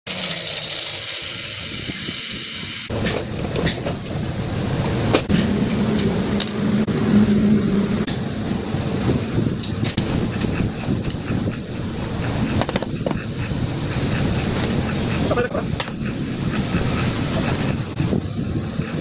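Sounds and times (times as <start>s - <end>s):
vibrator machine whining: 0.1s - 3.0s
machine grinding rattle: 0.1s - 3.4s
sharp clicks and knocks: 12.5s - 13.2s.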